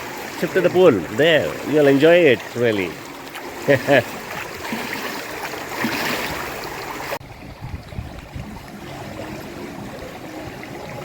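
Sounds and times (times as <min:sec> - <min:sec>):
pool water splashing: 0:00.0 - 0:11.0.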